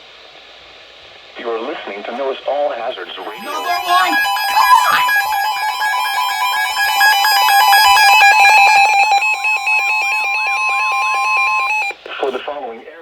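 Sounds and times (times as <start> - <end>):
chopped electronic alert tones: 3.2 - 12.0
steady electronic tone: 3.2 - 12.0.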